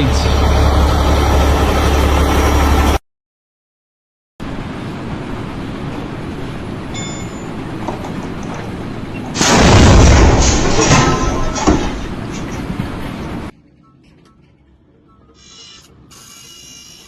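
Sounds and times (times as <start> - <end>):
steady background noise: 4.4 - 17.0
loud boom with deep rumble: 9.4 - 11.4.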